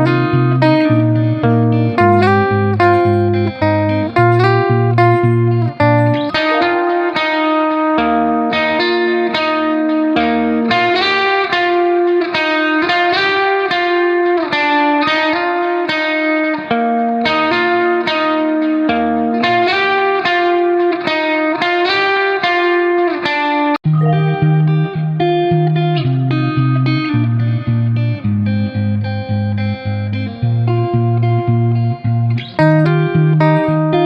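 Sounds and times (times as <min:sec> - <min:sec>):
plucked guitar run: 0:00.0 - 0:34.0.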